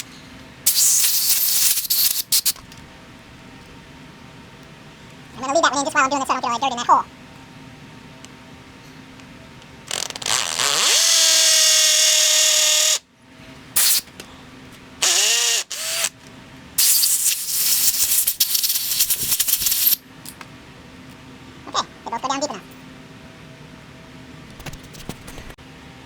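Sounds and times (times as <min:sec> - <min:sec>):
power drill drilling concrete: 0:15.0 - 0:16.1.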